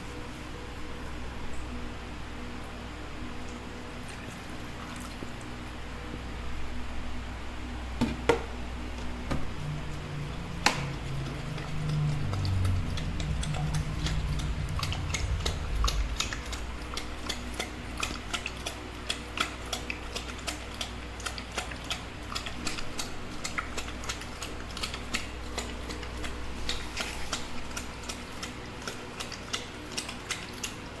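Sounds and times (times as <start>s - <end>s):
low rumble: 9.5s - 19.4s.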